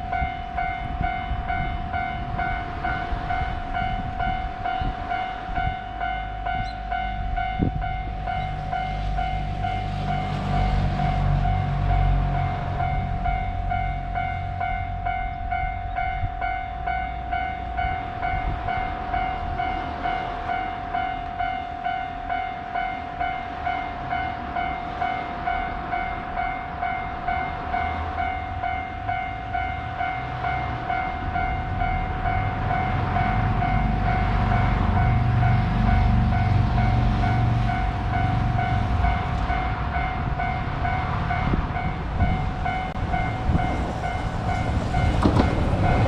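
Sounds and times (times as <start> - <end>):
train rumble: 0.0 - 46.0.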